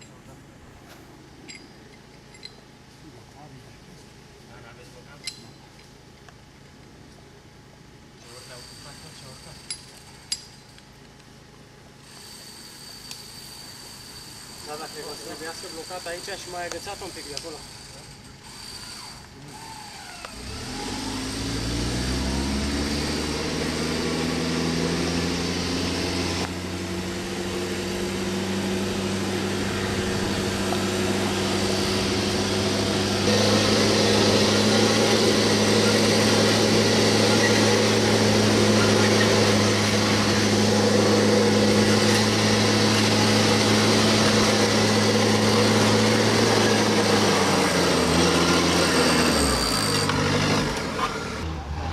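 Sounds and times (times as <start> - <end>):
vehicle engine revving: 19.5 - 51.9.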